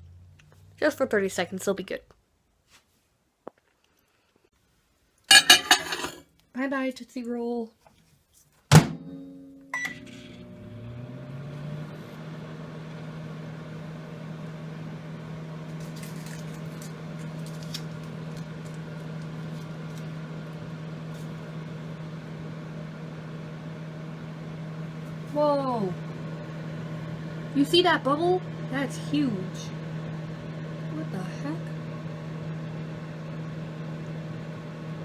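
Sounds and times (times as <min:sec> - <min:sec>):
microwave oven humming: 0:08.7 - 0:35.0.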